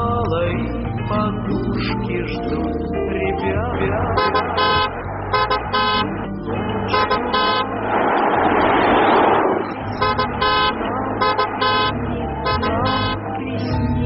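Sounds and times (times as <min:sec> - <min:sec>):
loud rushing noise: 0:04.0 - 0:13.6
car horn honking: 0:04.1 - 0:06.2, 0:06.8 - 0:07.8, 0:09.8 - 0:13.4.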